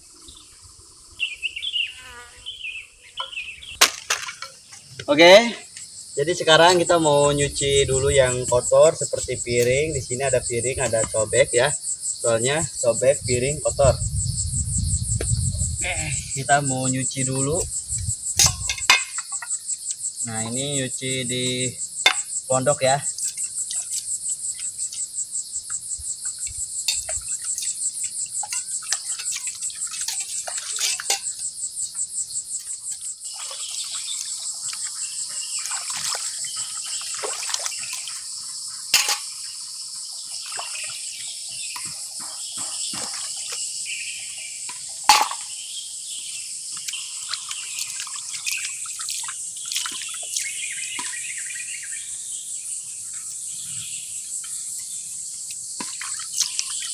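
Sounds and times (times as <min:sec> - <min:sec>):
crickets and insects chirping: 0:00.0 - 0:56.9
plates clattering: 0:18.4 - 0:19.5, 0:39.0 - 0:39.3, 0:45.1 - 0:45.5
water splashing: 0:28.4 - 0:31.4, 0:33.2 - 0:39.3, 0:40.3 - 0:41.1, 0:42.6 - 0:43.7, 0:46.9 - 0:51.2, 0:55.8 - 0:56.9.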